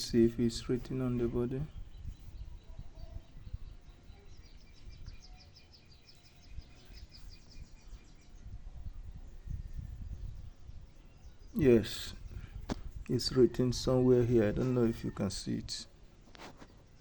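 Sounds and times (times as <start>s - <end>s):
small bird chirping: 1.7s - 13.3s.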